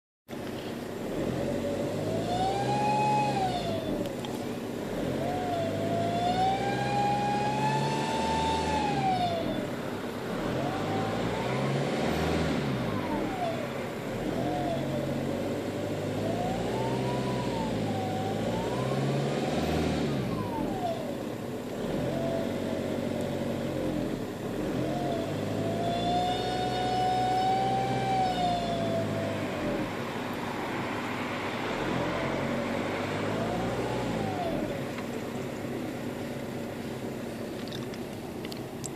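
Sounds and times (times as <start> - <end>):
turbo whine: 1.0 - 35.6
diesel engine revving: 1.0 - 38.9.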